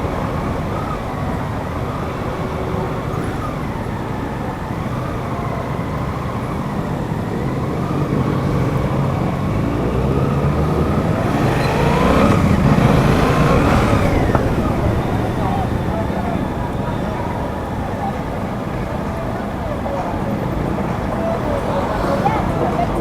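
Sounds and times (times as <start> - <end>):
road and wind rush: 0.0 - 23.0
motorcycle engine running: 8.7 - 17.9.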